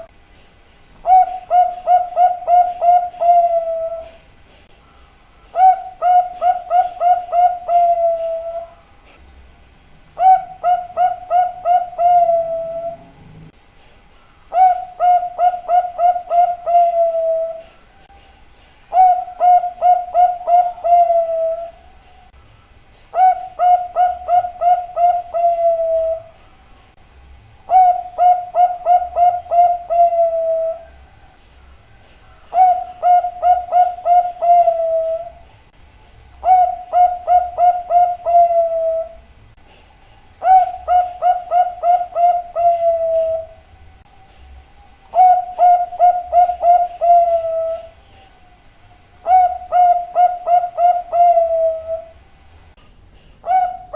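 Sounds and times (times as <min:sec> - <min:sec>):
dove cooing: 0:01.0 - 0:04.3, 0:05.5 - 0:08.9, 0:10.1 - 0:13.6, 0:14.5 - 0:17.8, 0:18.9 - 0:22.0, 0:23.1 - 0:26.4, 0:27.7 - 0:31.2, 0:32.3 - 0:35.5, 0:36.4 - 0:39.3, 0:40.4 - 0:43.7, 0:45.1 - 0:48.5, 0:49.2 - 0:52.2, 0:53.4 - 0:53.9.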